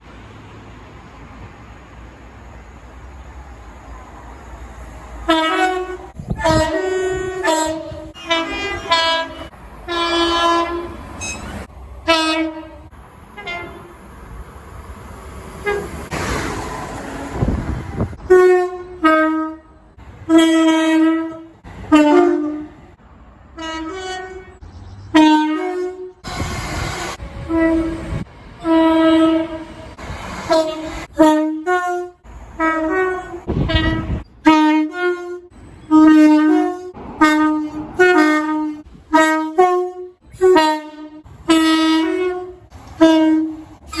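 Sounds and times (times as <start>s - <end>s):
rushing noise of moving trains: 0.0s - 44.0s
two-tone train horn blasts: 5.2s - 14.0s, 15.6s - 16.0s, 18.2s - 23.0s, 23.6s - 44.0s.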